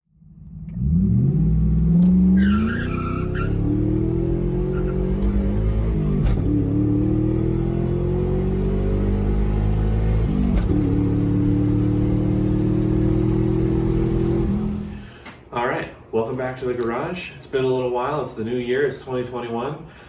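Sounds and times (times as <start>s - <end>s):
car engine revving: 0.2s - 15.1s.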